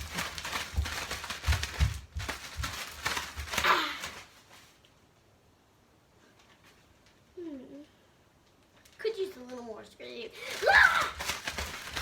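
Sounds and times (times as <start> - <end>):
plastic bag crinkling: 0.0 - 4.9, 10.4 - 12.0.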